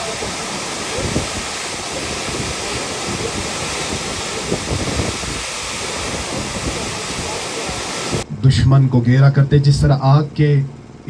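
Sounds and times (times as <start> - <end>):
waterfall rushing: 0.0 - 8.3
wind buffeting the microphone: 0.0 - 8.3.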